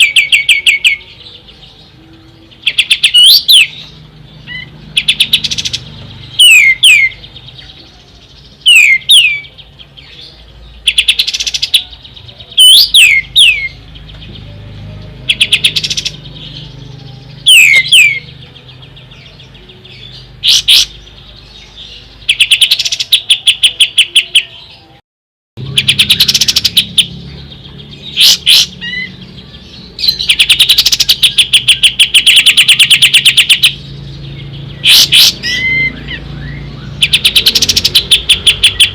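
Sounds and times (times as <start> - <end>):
bulbul singing loudly: 4.5 - 7.5, 12.5 - 18.5, 25.6 - 27.2, 30.0 - 38.9.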